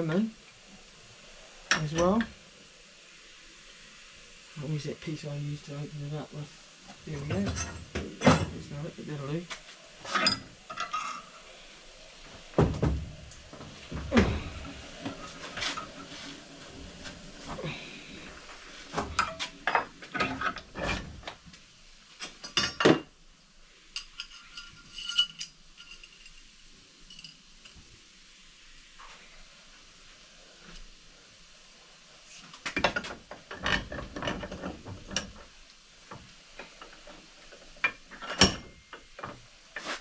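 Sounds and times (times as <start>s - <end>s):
metal clinking and knocking: 7.2s - 8.7s, 10.1s - 11.3s, 24.0s - 26.4s, 32.7s - 35.5s, 37.6s - 39.4s.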